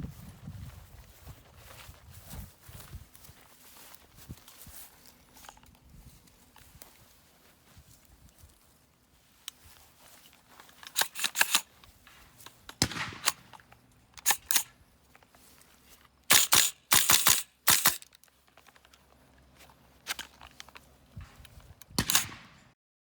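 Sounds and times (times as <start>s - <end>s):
rifle action clacking: 10.8s - 14.8s, 16.3s - 18.3s, 21.5s - 22.6s.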